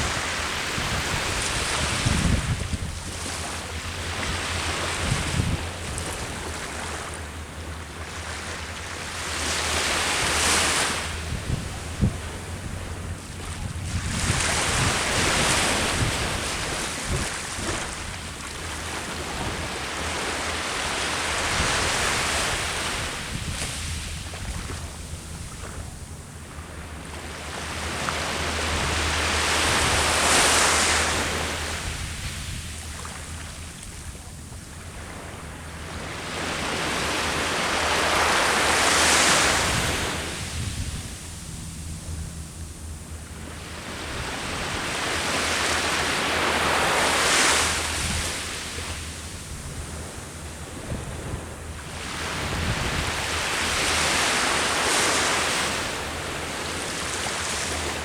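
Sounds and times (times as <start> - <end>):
steady low rumble: 0.0 - 38.8
ocean waves breaking: 0.0 - 58.0.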